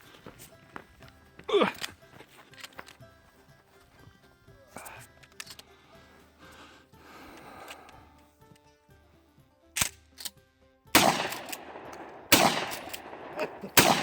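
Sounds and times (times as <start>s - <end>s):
shotgun sharp clicks: 11.0s - 14.0s
shotgun shots echoing: 11.0s - 14.0s.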